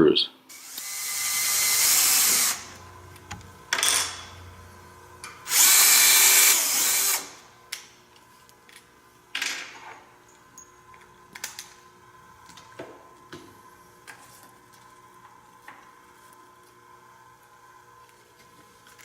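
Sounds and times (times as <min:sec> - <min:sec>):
power drill boring into wood: 0:00.5 - 0:02.8, 0:05.5 - 0:07.4.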